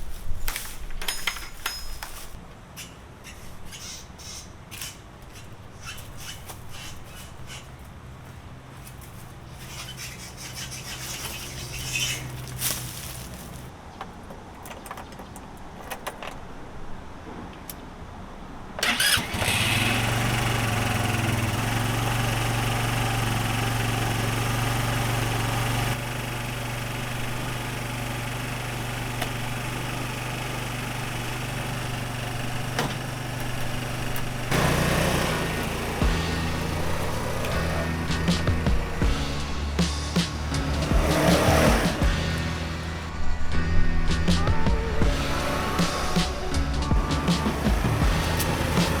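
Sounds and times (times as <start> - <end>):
scooter engine idling: 18.8 - 43.1, 44.4 - 49.0.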